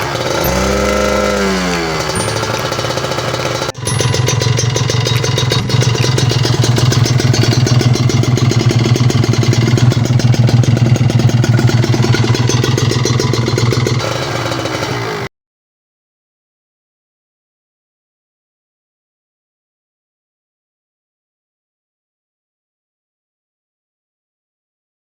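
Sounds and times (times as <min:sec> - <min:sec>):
motorcycle engine idling: 0:00.0 - 0:15.3.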